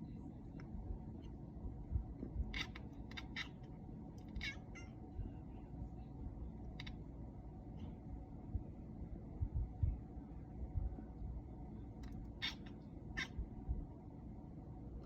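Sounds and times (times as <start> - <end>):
cat chirping: 2.4 - 5.0, 12.2 - 13.4.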